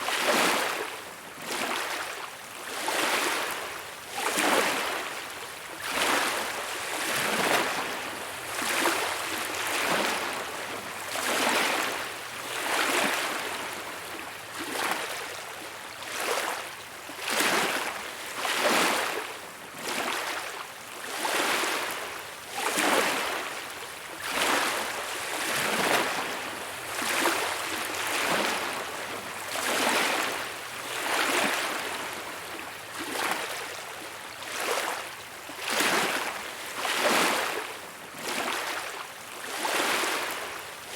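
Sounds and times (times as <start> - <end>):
small waves lapping on shore: 0.0 - 40.9.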